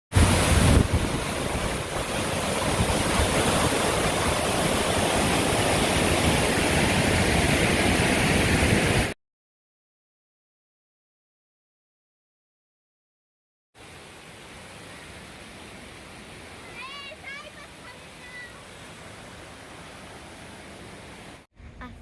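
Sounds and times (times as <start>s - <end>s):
waterfall rushing: 0.1s - 9.2s, 13.8s - 21.4s.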